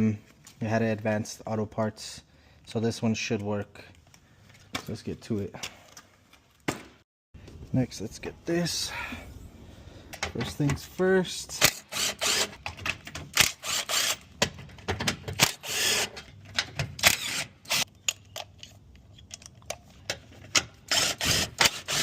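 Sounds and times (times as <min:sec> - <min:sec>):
metal tools clicking and rattling: 0:17.8 - 0:20.7.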